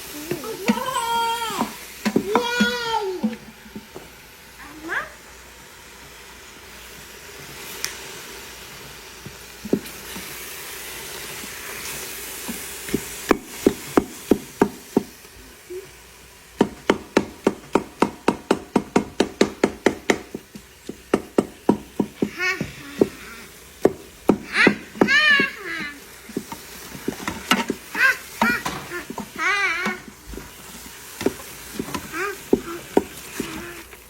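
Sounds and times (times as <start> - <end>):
steady hiss: 0.0 - 34.0
sharp wooden knocks: 16.6 - 22.4, 23.8 - 25.6.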